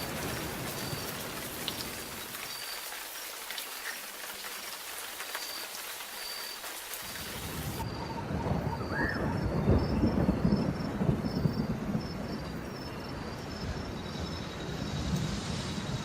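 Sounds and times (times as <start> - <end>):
thunder rumbling: 0.0 - 2.4, 7.3 - 16.0
steady rain: 0.0 - 16.0.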